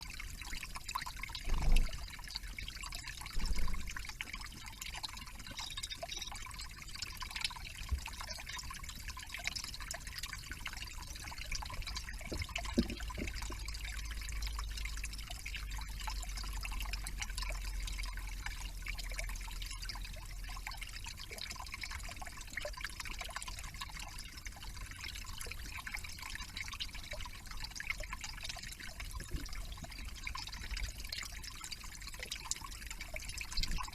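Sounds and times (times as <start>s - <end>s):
water trickling and dripping: 0.0s - 33.9s.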